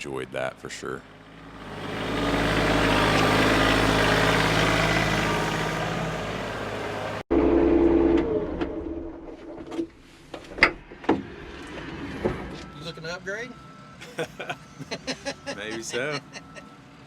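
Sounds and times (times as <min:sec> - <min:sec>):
engine-like steady tone: 0:00.0 - 0:09.6, 0:10.6 - 0:17.0
equipment engine running: 0:01.0 - 0:09.0.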